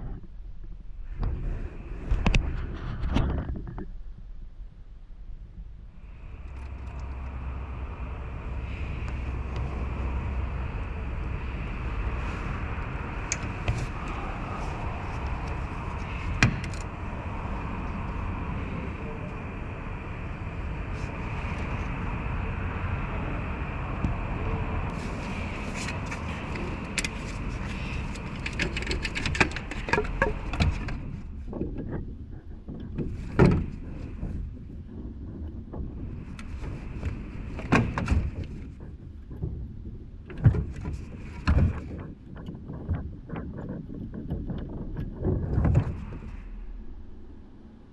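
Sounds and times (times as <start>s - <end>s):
engine high-pitched whine: 6.0s - 31.6s.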